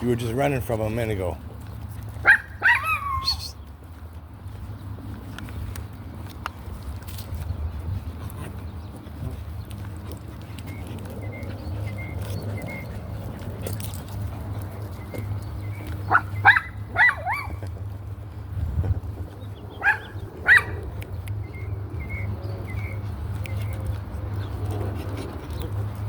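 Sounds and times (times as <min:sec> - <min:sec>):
dog barking: 0:02.2 - 0:03.4, 0:16.1 - 0:17.6, 0:19.8 - 0:20.8.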